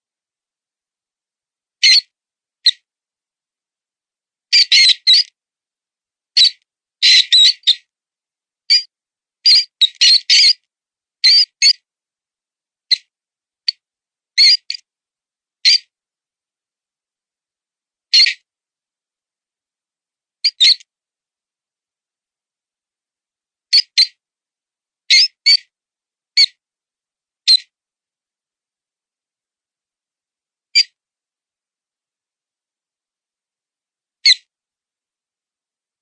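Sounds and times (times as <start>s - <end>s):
high-pitched mouse squeaks: 4.6s - 5.3s, 6.4s - 7.8s, 8.7s - 10.6s, 11.2s - 11.8s, 14.4s - 14.8s, 15.6s - 15.9s, 18.1s - 18.4s, 20.4s - 20.8s, 23.7s - 24.2s, 25.1s - 25.7s, 27.5s - 27.7s.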